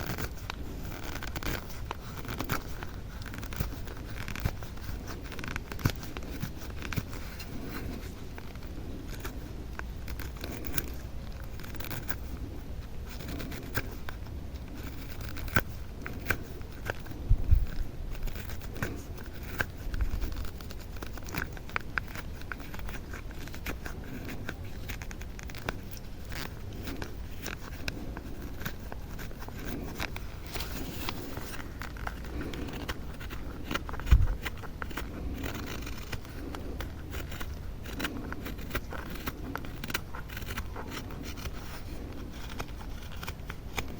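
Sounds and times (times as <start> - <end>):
knife scraping wood: 0.0 - 43.9.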